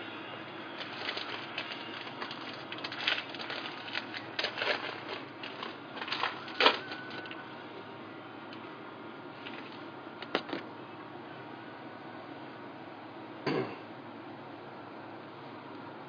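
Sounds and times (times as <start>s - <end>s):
packaging rustling and crinkling: 0.7s - 7.5s, 9.4s - 10.6s.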